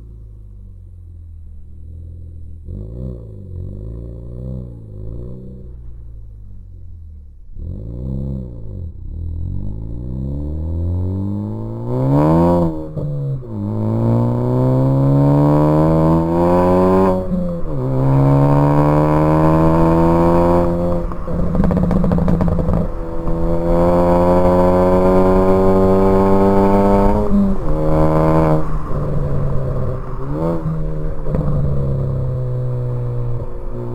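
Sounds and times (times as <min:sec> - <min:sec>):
car engine accelerating hard: 0:00.0 - 0:33.9
exhaust pops and crackles: 0:20.6 - 0:25.7, 0:28.8 - 0:33.9.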